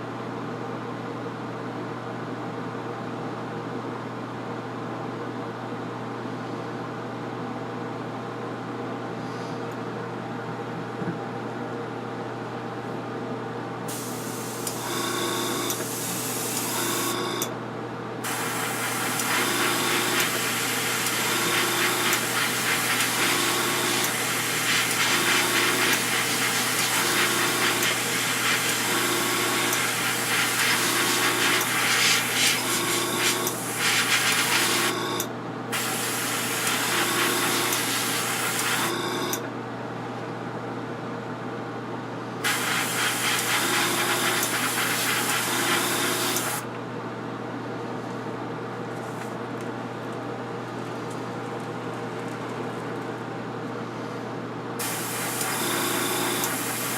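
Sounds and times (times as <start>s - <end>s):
air compressor humming: 13.8s - 17.5s, 18.2s - 39.4s, 42.4s - 46.8s, 54.8s - 56.9s
airbrush hissing: 42.5s - 46.5s.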